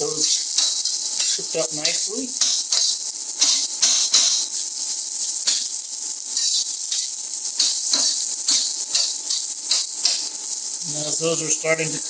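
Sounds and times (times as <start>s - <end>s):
stirring clatter in wok: 0.0s - 4.6s, 5.2s - 10.4s
shallots sizzling in hot oil: 0.0s - 12.0s.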